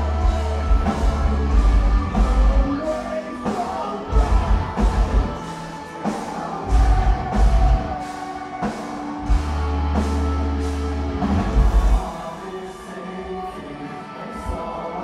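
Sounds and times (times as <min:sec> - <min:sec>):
metalcore band playing live: 0:00.0 - 0:15.0.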